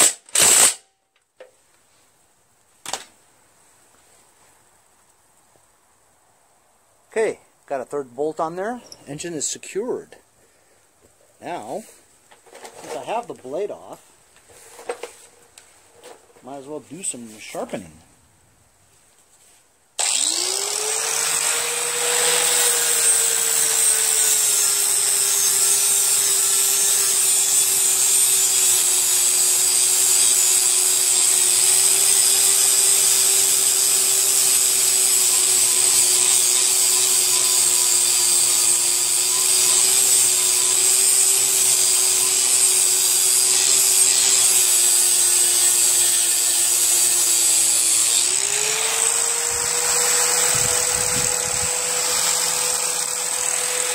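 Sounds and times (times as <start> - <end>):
power tool grinding blade: 0.0 - 0.8, 20.0 - 53.9.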